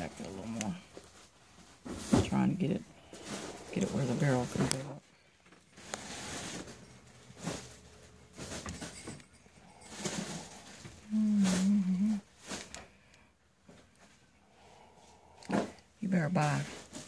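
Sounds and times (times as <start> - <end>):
low wavering hum: 6.7 - 12.3.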